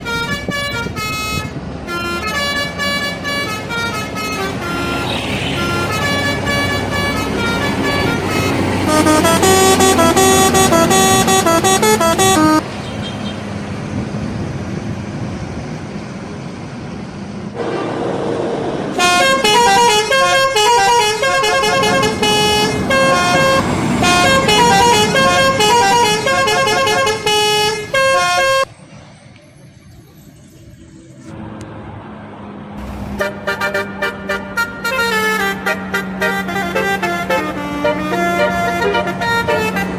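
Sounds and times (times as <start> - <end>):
musical bus horns playing melodies: 0.0 - 13.5, 18.9 - 28.7, 33.0 - 39.9
bus engine: 0.0 - 39.9
traffic noise: 0.0 - 39.9.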